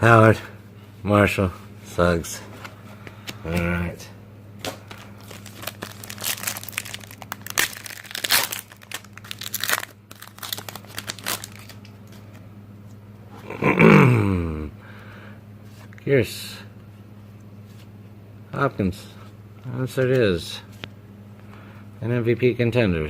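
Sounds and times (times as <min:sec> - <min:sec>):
foil wrapper tearing and crinkling: 0:04.9 - 0:12.2.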